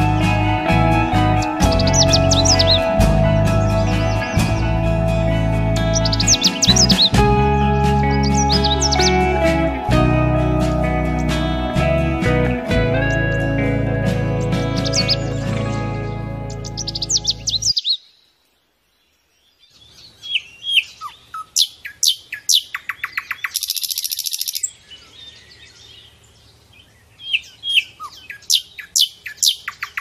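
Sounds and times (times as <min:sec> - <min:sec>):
music: 0:00.0 - 0:17.7
songbird chirping and trilling: 0:00.0 - 0:30.0.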